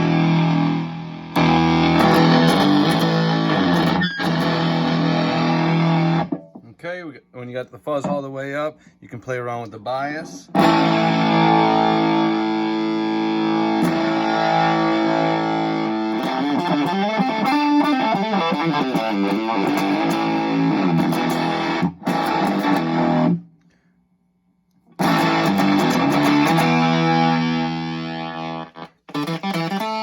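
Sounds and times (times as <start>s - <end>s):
fuzz electric guitar: 0.0s - 6.6s, 10.5s - 23.5s, 25.0s - 30.0s.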